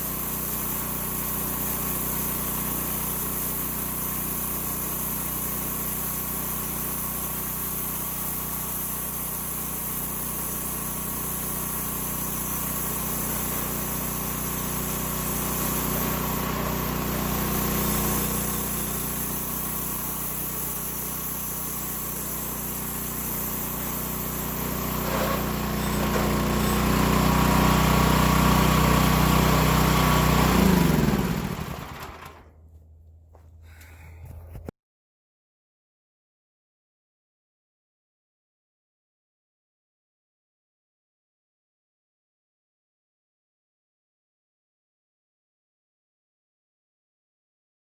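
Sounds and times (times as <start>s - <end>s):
sawmill engine running: 0.0s - 32.5s.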